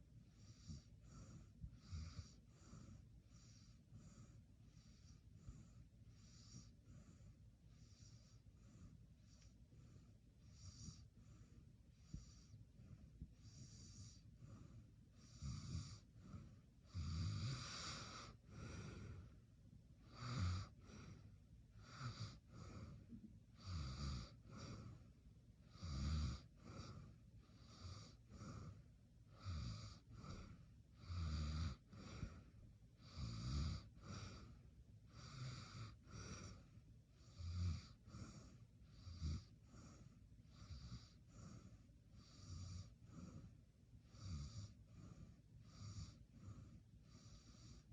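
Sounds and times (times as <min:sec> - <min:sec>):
person snoring: 0:16.9 - 0:19.3.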